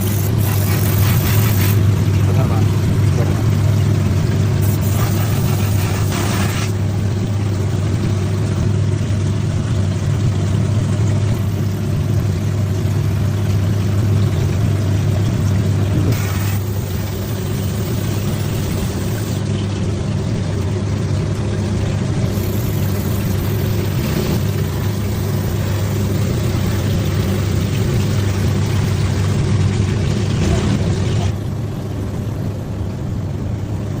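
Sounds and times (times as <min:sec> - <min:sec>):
air compressor motor hum: 0:00.0 - 0:14.2, 0:16.0 - 0:19.5, 0:21.5 - 0:32.8
short air hisses: 0:04.6 - 0:06.8, 0:16.1 - 0:17.7.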